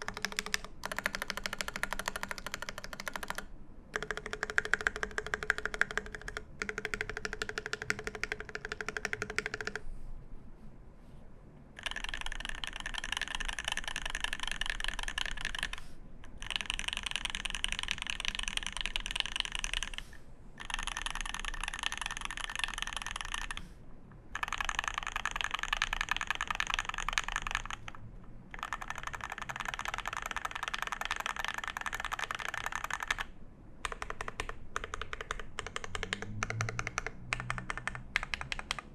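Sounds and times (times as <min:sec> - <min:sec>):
mechanical keyboard key clacks: 0:33.8 - 0:38.8.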